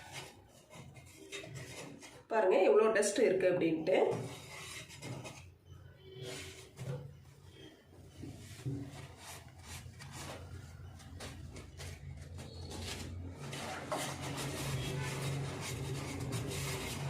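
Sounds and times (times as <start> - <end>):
cloth rubbing and scraping: 4.1 - 17.0.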